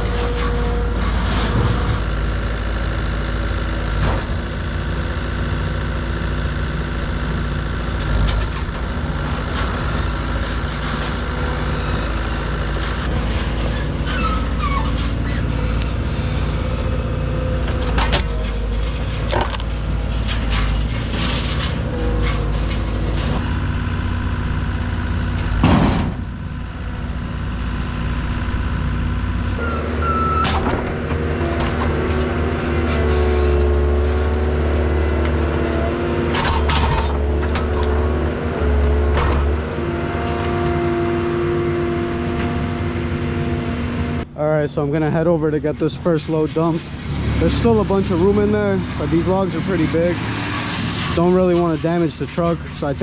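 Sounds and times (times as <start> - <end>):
skid steer engine running: 0.0 - 53.0
logs knocking and clunking: 8.0 - 23.6
loud thump: 25.6 - 26.3.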